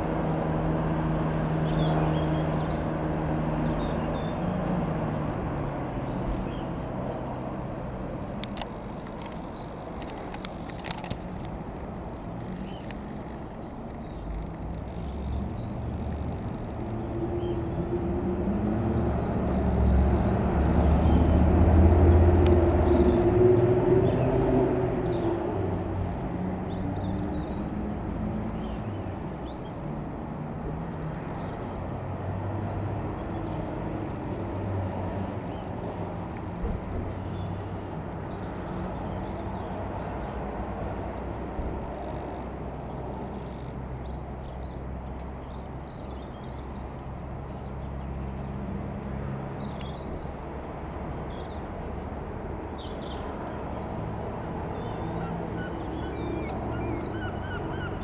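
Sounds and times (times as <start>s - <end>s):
light aircraft engine drone: 0.0s - 58.0s
bird chirps: 54.6s - 58.0s.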